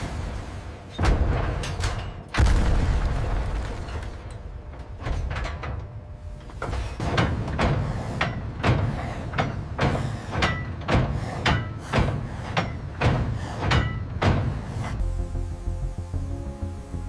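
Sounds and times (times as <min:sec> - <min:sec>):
steady low hum: 0:00.0 - 0:17.0
music: 0:15.0 - 0:17.0.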